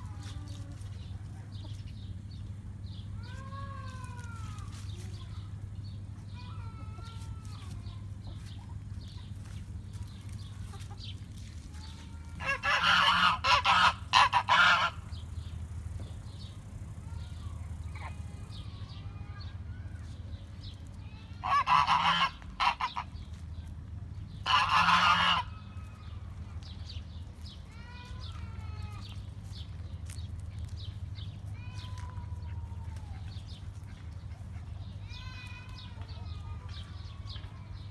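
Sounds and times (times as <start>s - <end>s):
low steady hum: 0.0s - 37.9s
small birds chirping: 0.0s - 37.9s
poultry calling loudly: 11.8s - 15.2s, 21.4s - 23.4s, 24.4s - 26.0s.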